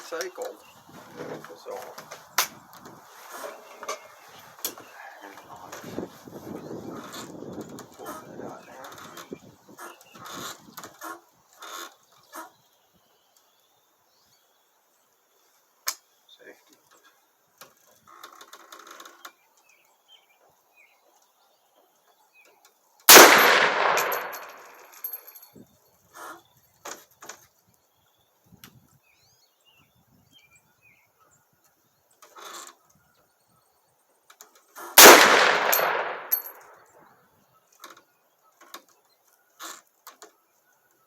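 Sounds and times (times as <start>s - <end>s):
rifle shots with echo: 23.1s - 25.2s, 35.0s - 36.8s.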